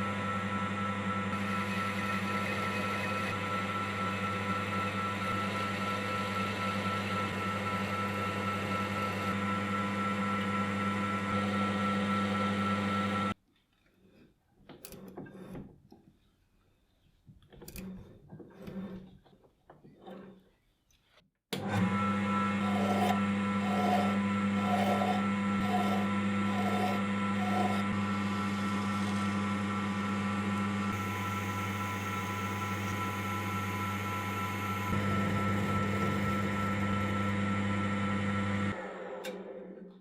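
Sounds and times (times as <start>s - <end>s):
electric workshop machine humming: 0.0s - 13.4s, 21.5s - 40.0s.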